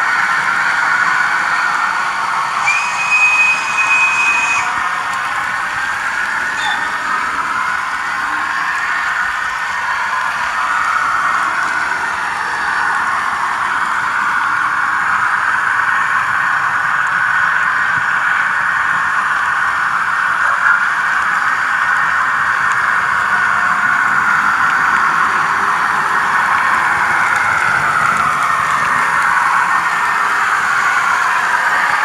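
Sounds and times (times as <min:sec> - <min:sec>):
model electric locomotive whine: 0:00.0 - 0:32.0.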